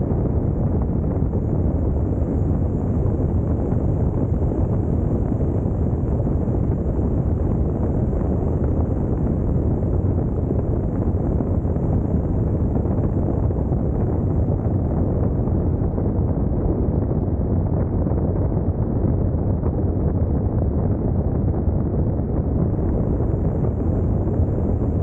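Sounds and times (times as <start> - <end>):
wind rush on microphone: 0.0 - 25.0.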